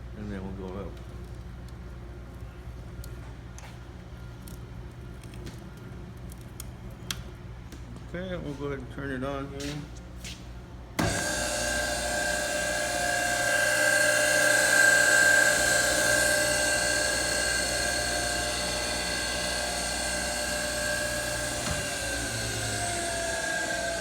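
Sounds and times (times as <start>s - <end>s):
surface grinder whining: 11.0s - 24.0s.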